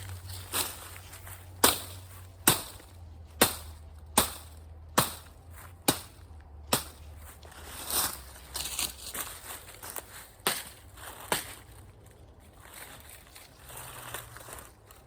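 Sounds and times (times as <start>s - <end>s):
machete chopping wood: 1.6s - 7.0s, 10.4s - 11.6s.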